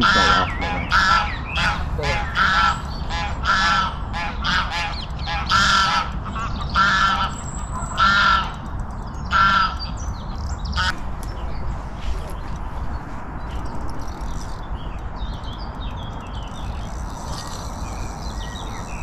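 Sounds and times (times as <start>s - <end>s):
bird giving harsh caw calls: 0.0s - 8.6s, 9.3s - 9.9s.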